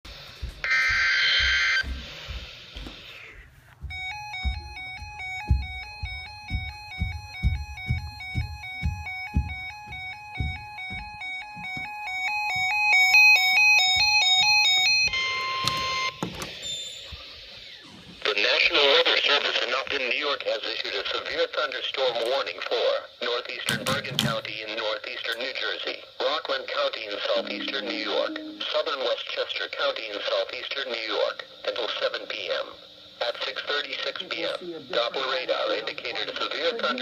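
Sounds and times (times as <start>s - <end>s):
screeching data tones: 0.6s - 1.8s
electronic beeping melody over a beat: 3.9s - 16.2s, 27.4s - 28.9s.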